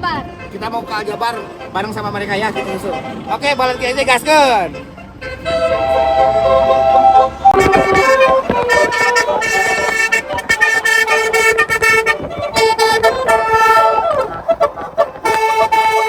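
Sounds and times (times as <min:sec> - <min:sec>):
multi-tone air horn melody: 0:00.0 - 0:16.0.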